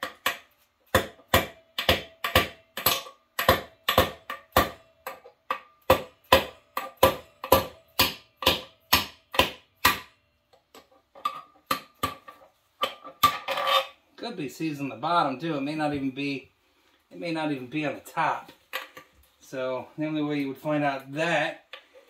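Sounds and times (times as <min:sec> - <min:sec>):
hammer striking metal piston: 0:00.0 - 0:10.1.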